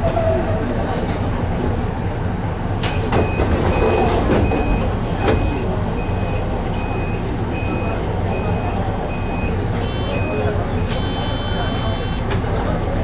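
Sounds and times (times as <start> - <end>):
short electronic beep: 5.4 - 12.3.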